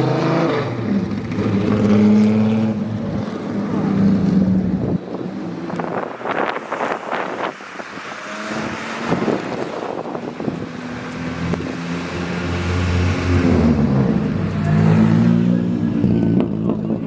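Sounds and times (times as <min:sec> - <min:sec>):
car engine approaching: 0:00.0 - 0:17.0
wind buffeting microphone: 0:04.3 - 0:17.0.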